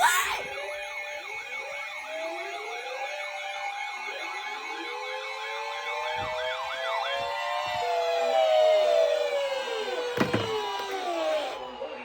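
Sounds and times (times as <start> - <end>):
wailing sirens: 0.0 - 12.0
yelping siren: 0.0 - 12.0.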